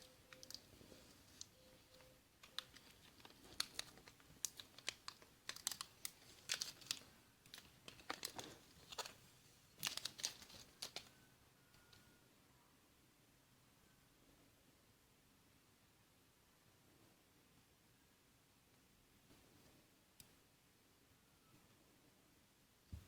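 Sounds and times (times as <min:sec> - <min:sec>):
crinkling: 0:00.0 - 0:12.0.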